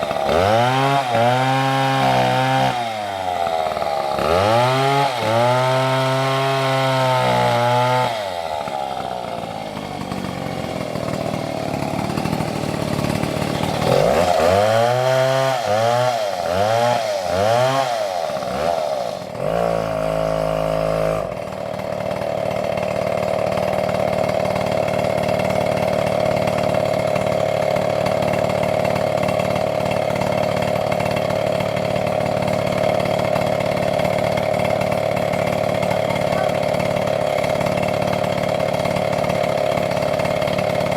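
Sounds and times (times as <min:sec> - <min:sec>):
chainsaw revving: 0:00.0 - 0:40.9.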